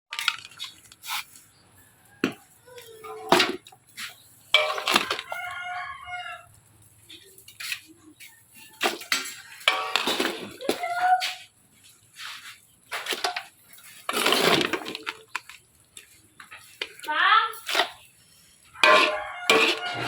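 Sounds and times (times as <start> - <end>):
chicken crowing: 4.6 - 6.5, 18.8 - 20.0.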